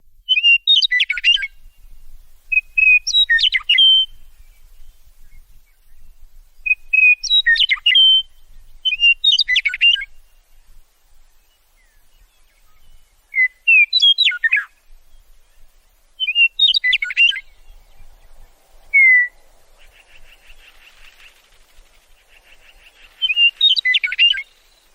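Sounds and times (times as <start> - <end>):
meadowlark singing: 0.0 - 24.9.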